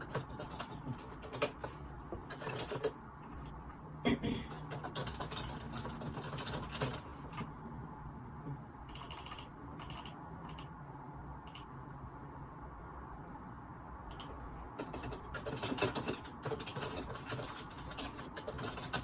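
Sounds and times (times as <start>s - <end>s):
typing on computer keyboard: 0.0s - 3.0s, 4.5s - 7.5s, 8.9s - 10.7s, 11.5s - 11.7s, 14.1s - 19.0s
steady low hum: 0.0s - 19.0s.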